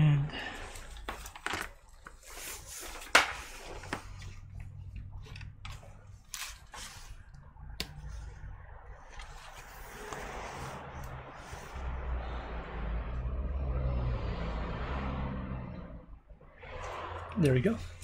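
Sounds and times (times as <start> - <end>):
hands handling laptop parts: 0.8 - 8.3.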